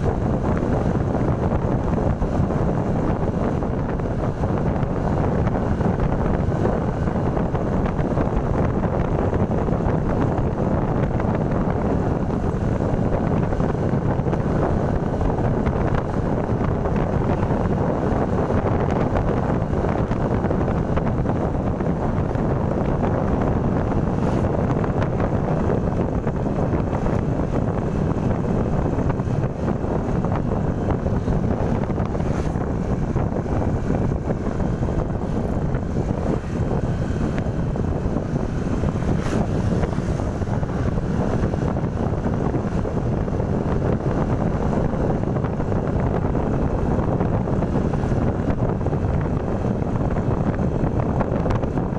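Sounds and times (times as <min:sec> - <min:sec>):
road noise: 0:00.0 - 0:51.9
wind rushing over microphone: 0:00.0 - 0:51.9
motorcycle engine: 0:11.3 - 0:50.8.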